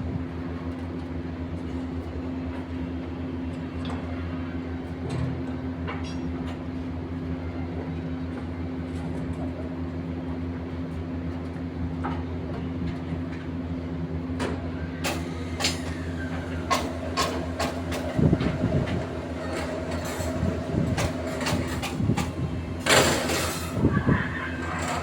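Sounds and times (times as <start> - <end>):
machine engine humming: 14.7 - 25.0.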